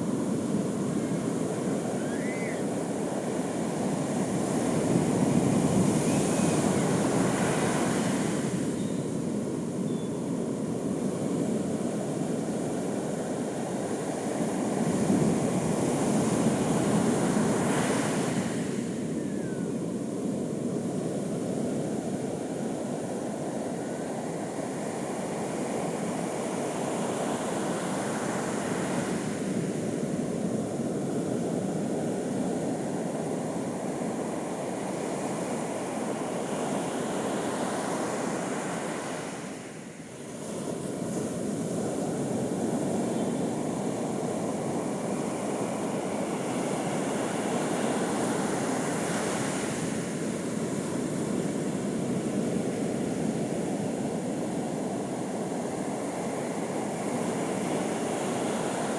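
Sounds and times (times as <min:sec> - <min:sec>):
waves breaking on beach: 0:33.7 - 0:58.9.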